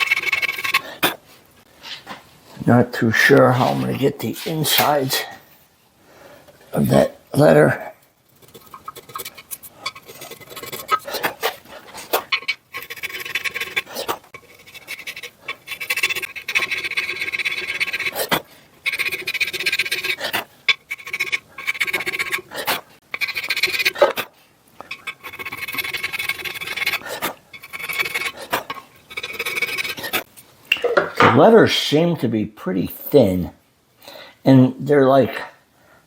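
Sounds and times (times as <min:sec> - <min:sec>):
hand file rasping on metal: 0:00.0 - 0:01.2, 0:08.4 - 0:30.3.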